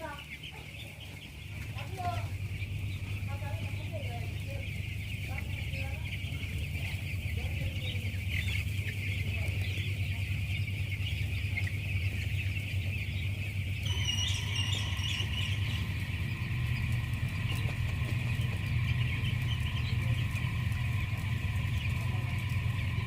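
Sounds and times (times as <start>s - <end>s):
chicks peeping: 0.0s - 23.0s
low hum: 0.0s - 23.0s
thin steady whine: 13.8s - 23.0s.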